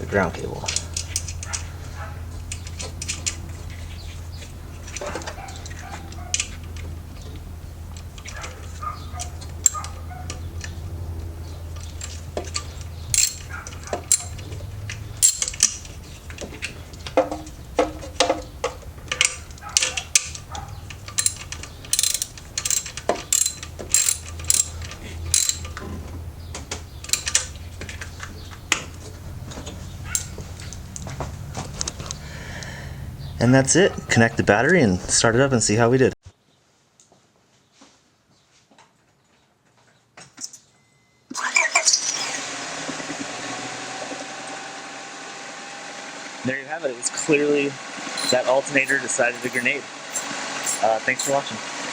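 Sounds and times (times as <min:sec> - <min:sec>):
steady low hum: 0:00.0 - 0:36.2
ratchet wrench clicking: 0:13.1 - 0:14.4, 0:15.2 - 0:15.9, 0:19.1 - 0:25.8, 0:27.0 - 0:27.5, 0:48.2 - 0:51.4.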